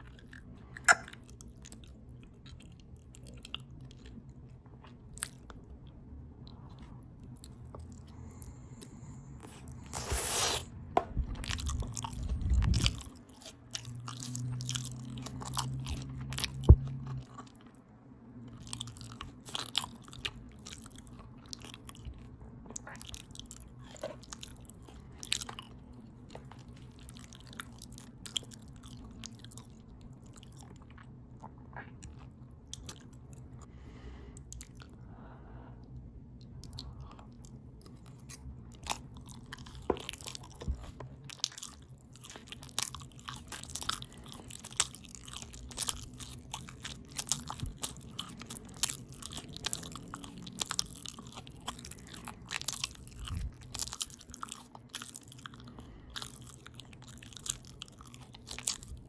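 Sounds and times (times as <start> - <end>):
open-mouth chewing: 0.0 - 10.7, 35.8 - 59.0.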